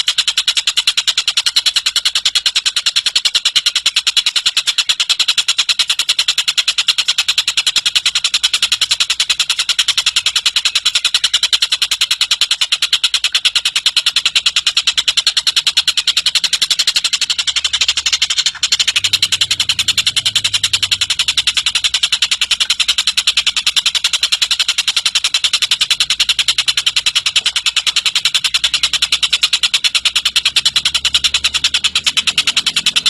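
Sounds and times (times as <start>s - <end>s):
bird high-pitched trill: 0.1s - 33.0s.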